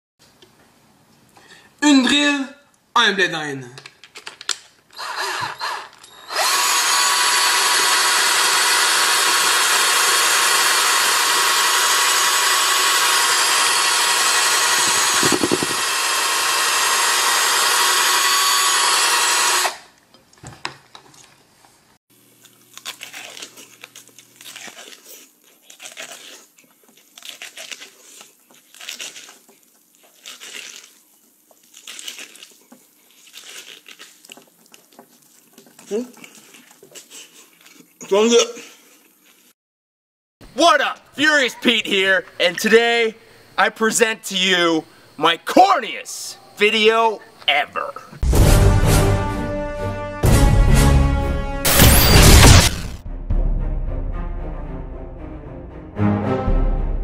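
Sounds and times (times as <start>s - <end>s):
electric drill whining: 4.9s - 19.9s.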